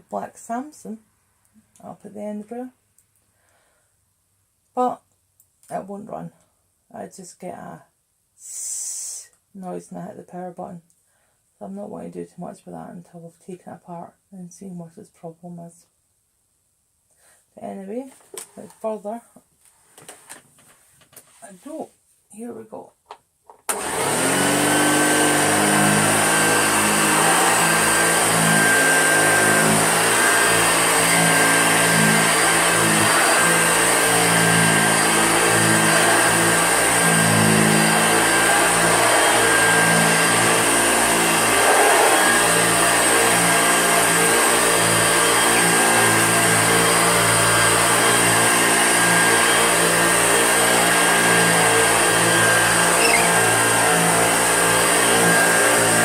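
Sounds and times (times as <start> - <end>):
vacuum cleaner motor whining: 23.7 - 56.0.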